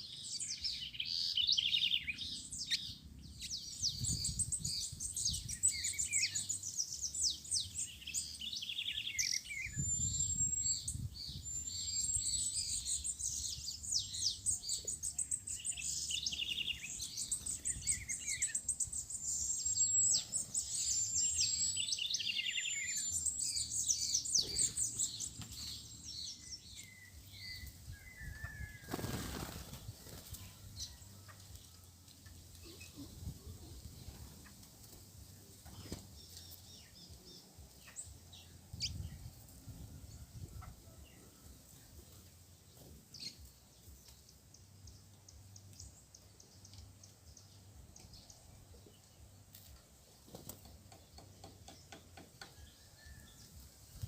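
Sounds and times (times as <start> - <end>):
songbirds chirping and singing: 0.0 - 54.0.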